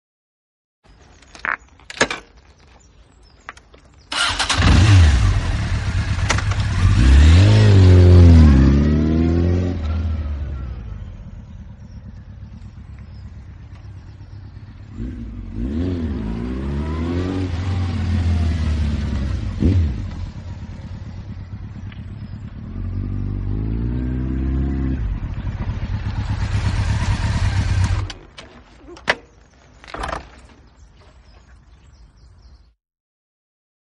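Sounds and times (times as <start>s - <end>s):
motorcycle engine revving: 4.1s - 28.4s.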